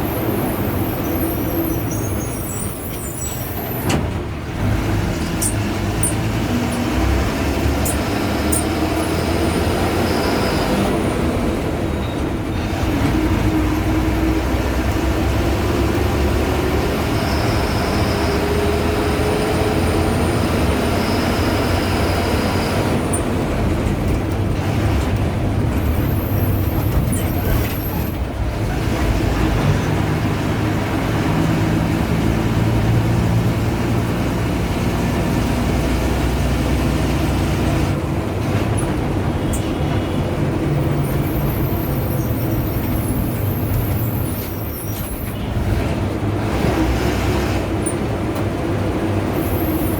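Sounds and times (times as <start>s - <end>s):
diesel bus engine running: 0.0s - 49.9s.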